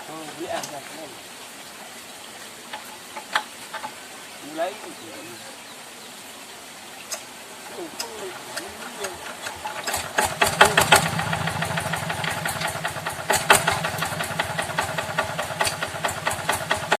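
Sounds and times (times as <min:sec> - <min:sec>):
diesel tractor engine knocking: 0:08.5 - 0:17.0.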